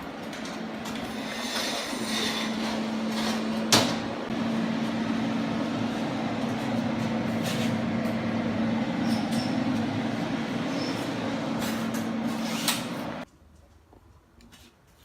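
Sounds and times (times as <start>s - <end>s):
mechanical hum with hiss: 0.0s - 13.3s.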